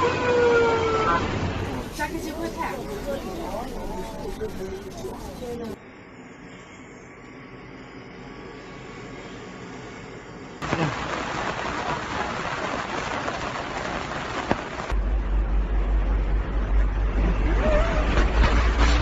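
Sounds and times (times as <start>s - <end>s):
heavy rain: 10.6s - 19.0s
deep low rumble: 14.9s - 19.0s.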